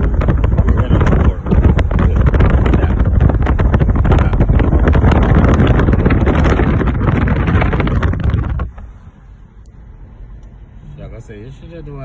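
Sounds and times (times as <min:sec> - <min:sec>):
wind buffeting microphone: 0:00.0 - 0:09.0.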